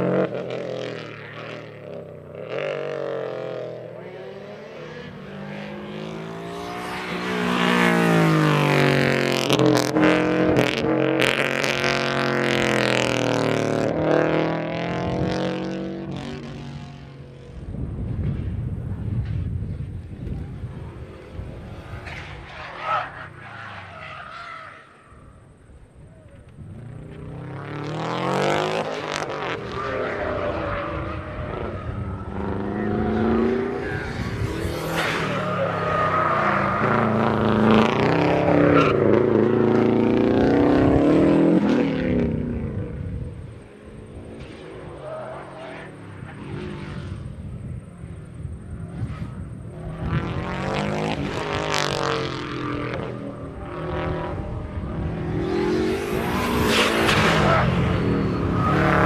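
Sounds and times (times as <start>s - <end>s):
car engine pulling hard: 0.0s - 59.0s.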